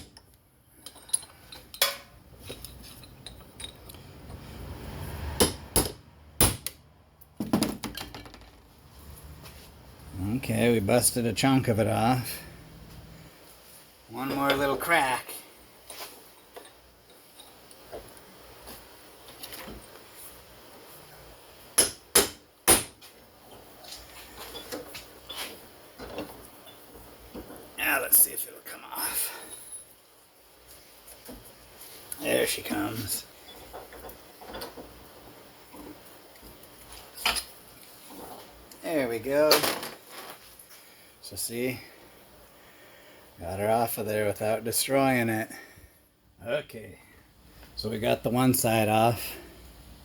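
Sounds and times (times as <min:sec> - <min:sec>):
hammer striking chisel on metal: 0:05.4 - 0:06.8, 0:21.8 - 0:23.0.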